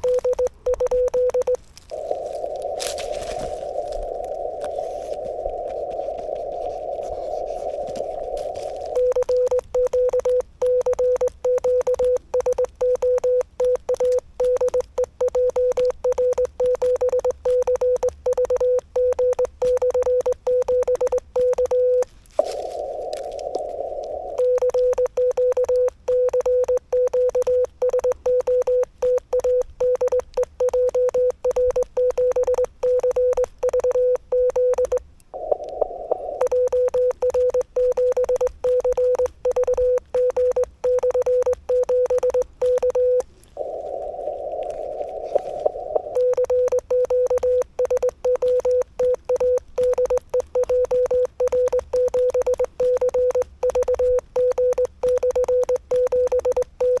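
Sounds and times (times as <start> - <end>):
morse code beeps: 0.0 - 43.8, 44.8 - 57.0
radio receiver hiss: 1.5 - 9.4, 22.3 - 24.6, 35.3 - 36.5, 43.3 - 46.3.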